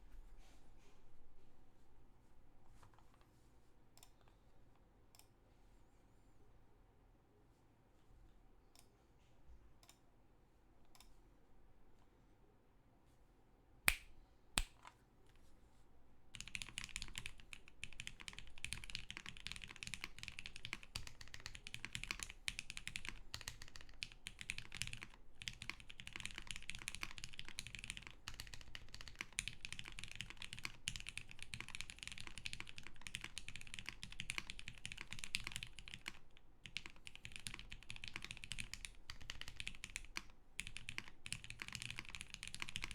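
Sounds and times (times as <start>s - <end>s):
mechanical keyboard typing: 16.4s - 42.9s.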